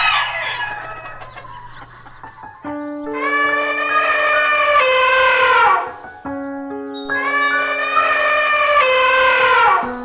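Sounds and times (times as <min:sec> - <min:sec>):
rooster crowing: 0:00.0 - 0:02.0.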